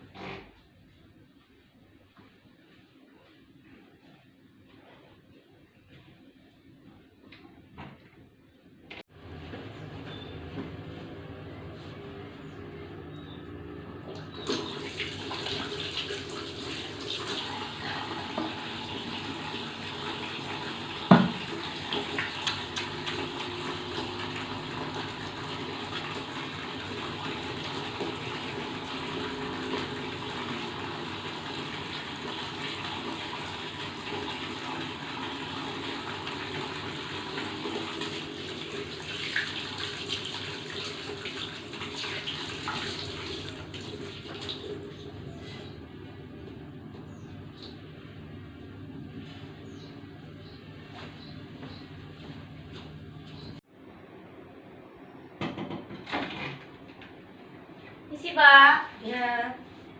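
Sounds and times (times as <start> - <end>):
tap water running into sink: 14.1 - 45.0.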